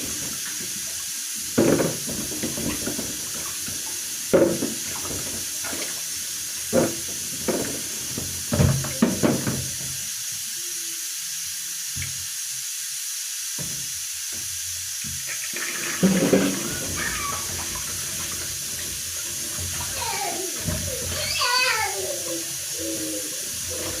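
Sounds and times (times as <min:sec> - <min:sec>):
tap running into sink: 0:00.0 - 0:06.1, 0:06.7 - 0:10.0, 0:13.6 - 0:24.0
knocks of containers handled: 0:01.6 - 0:05.9, 0:06.7 - 0:09.8, 0:16.0 - 0:21.3.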